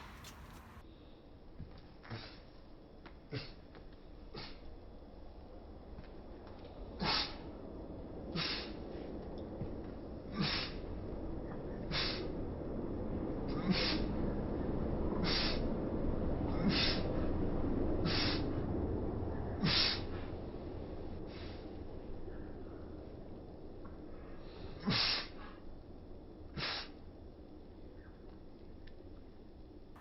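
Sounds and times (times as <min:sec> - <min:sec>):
cat sneezing: 0:07.0 - 0:07.3, 0:10.4 - 0:10.7, 0:11.9 - 0:12.2, 0:13.6 - 0:14.1, 0:15.2 - 0:15.6, 0:16.6 - 0:17.0, 0:18.1 - 0:18.4, 0:19.6 - 0:20.0, 0:24.8 - 0:25.3, 0:26.6 - 0:26.9.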